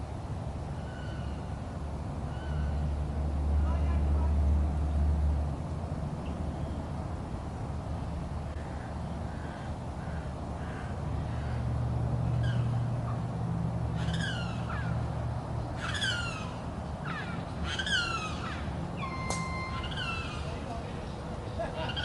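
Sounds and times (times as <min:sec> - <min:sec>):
bird calling: 0:00.7 - 0:01.6, 0:02.3 - 0:02.8, 0:12.3 - 0:12.9, 0:13.9 - 0:15.0, 0:15.6 - 0:22.0.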